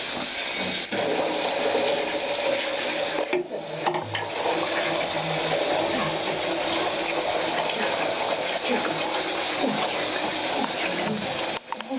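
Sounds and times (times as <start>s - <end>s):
tap water running: 0.0s - 11.9s.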